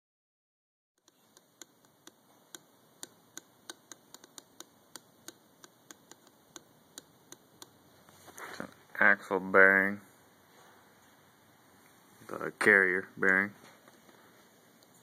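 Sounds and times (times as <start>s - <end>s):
faint bearing ticking: 1.0s - 7.8s.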